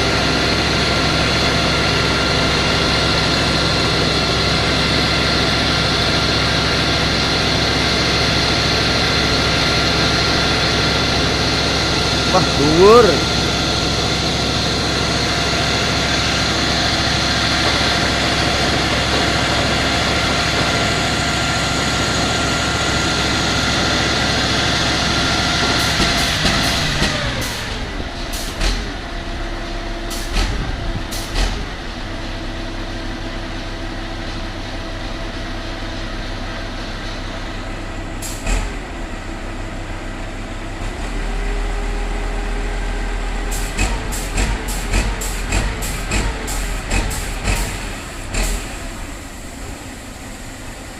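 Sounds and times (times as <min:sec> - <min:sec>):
heavy machine engine running: 0:00.0 - 0:50.9.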